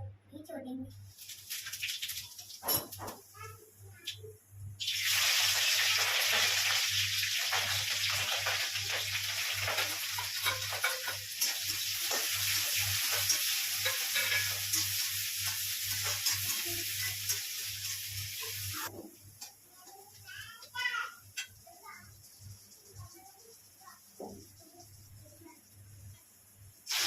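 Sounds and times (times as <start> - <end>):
food sizzling in hot oil: 1.0 - 3.4, 4.8 - 26.2, 26.8 - 27.0.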